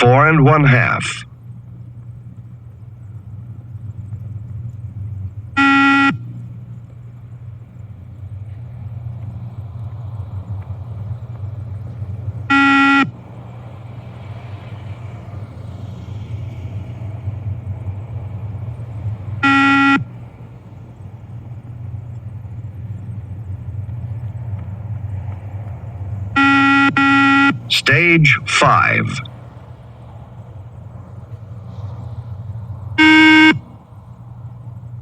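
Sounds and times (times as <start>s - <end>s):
steady low hum: 0.0s - 35.0s
electronic beeps: 12.5s - 13.1s, 26.4s - 29.3s, 33.0s - 33.6s.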